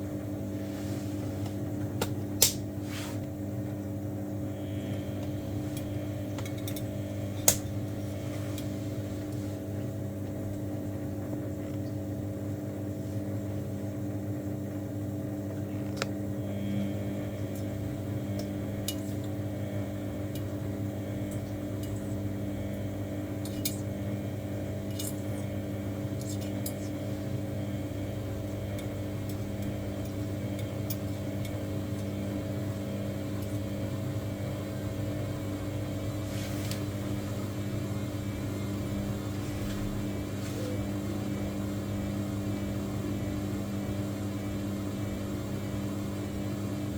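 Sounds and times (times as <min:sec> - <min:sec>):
washing machine humming: 0:00.0 - 0:46.9.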